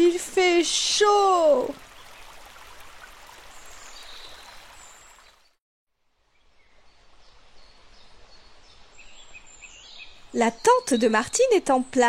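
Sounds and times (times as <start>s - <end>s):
stream flowing: 0.0s - 5.6s.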